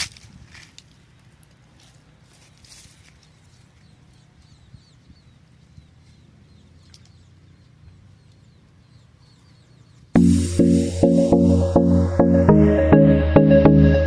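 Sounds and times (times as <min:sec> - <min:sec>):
faint outdoor ambience: 0:00.0 - 0:14.0
high bird chirps: 0:03.3 - 0:11.5.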